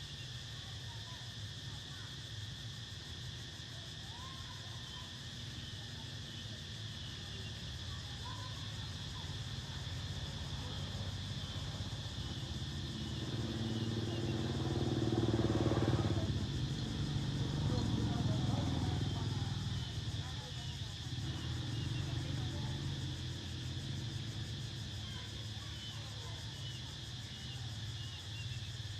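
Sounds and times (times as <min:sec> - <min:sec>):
high insect drone: 0:00.0 - 0:28.9
vehicle engine approaching: 0:08.6 - 0:28.9.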